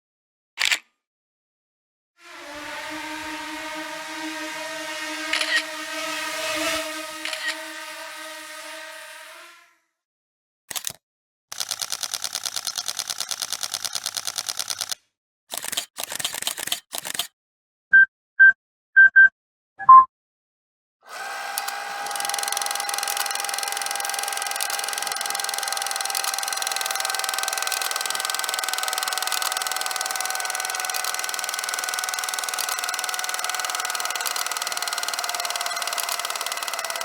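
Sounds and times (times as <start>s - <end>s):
camera motor whirring: 5.2s - 9.6s, 10.7s - 15.0s, 21.1s - 37.0s
camera beep: 5.3s - 5.6s, 7.2s - 7.6s, 22.0s - 37.0s.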